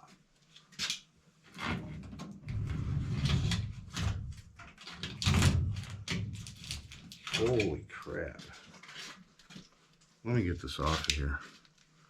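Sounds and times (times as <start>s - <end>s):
sheet metal rustling and scraping: 1.6s - 9.7s.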